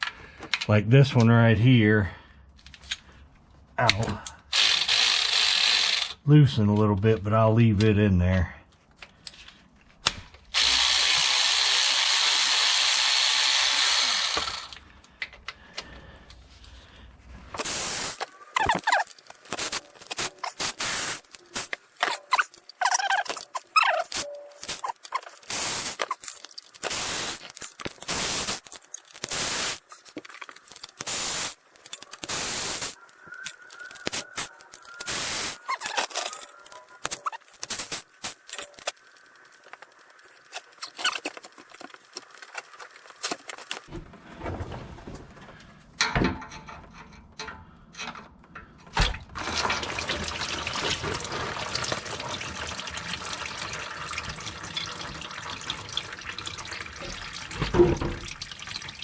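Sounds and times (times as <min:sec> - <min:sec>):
power tool loosening bolts: 0:04.5 - 0:06.2, 0:10.5 - 0:14.8, 0:17.6 - 0:39.0.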